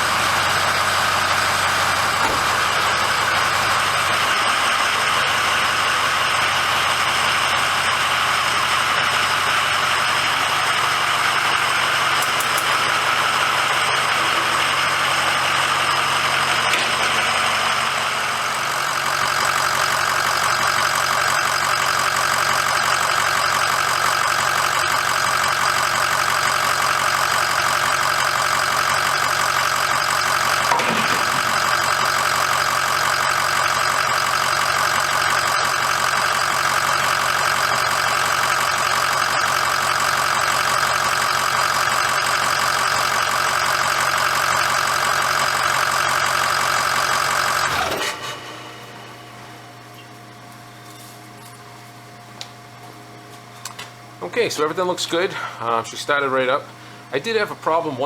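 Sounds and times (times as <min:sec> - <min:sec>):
diesel engine idling: 0:00.0 - 0:58.0.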